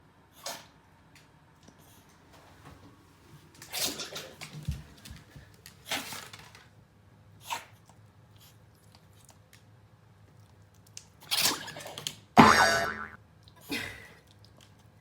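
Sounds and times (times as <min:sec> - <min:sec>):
dog sneezing: 0:00.4 - 0:00.7, 0:03.7 - 0:04.3, 0:07.4 - 0:07.8, 0:11.2 - 0:11.9.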